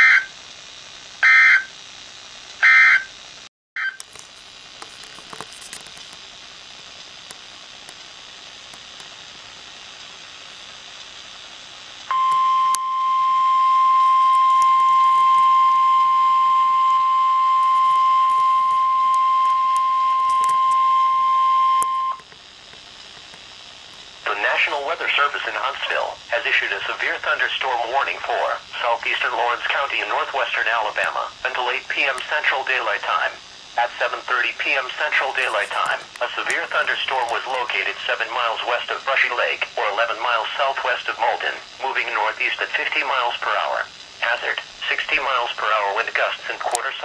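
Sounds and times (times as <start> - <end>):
steady warning alarm tone: 0.0 - 0.4, 1.2 - 1.8, 2.6 - 3.2, 12.1 - 22.3
faint hiss: 22.4 - 47.0.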